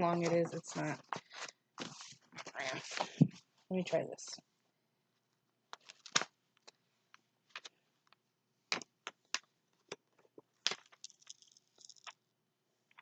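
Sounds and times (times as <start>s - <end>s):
canvas crinkling and tapping: 0.0s - 3.4s.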